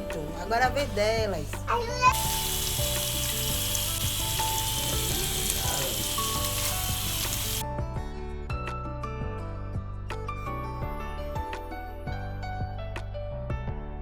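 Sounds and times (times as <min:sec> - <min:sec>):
background music: 0:00.0 - 0:14.0
food sizzling in hot oil: 0:02.0 - 0:07.6.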